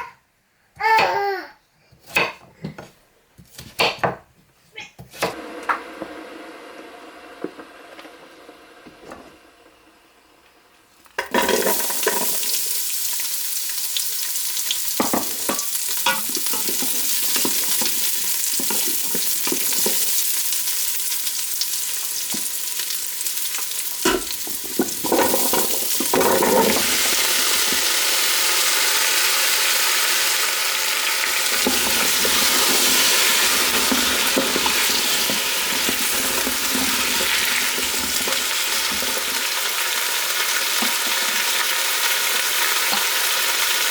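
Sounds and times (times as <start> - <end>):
food sizzling in hot oil: 11.3 - 43.9
utensil stirring in a pot: 13.9 - 27.9, 31.4 - 39.4.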